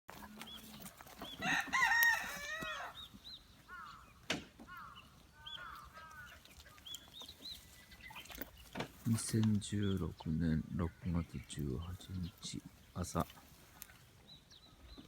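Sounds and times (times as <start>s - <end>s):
small birds chirping: 0.1s - 15.0s
rooster crowing: 1.4s - 3.0s.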